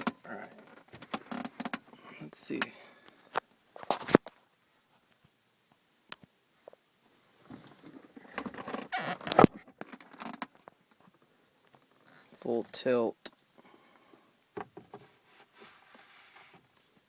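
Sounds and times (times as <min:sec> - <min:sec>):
scraping and rustling: 0:14.8 - 0:17.0.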